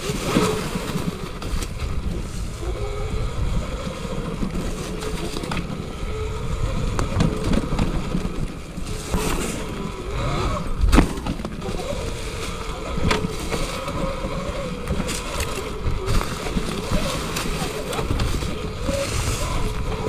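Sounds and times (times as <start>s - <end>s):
faint electric motor whine: 0.0s - 20.0s
tyre and trail rumble: 0.0s - 20.0s
wind on microphone: 0.0s - 20.0s
knocks over bumps: 6.7s - 20.0s.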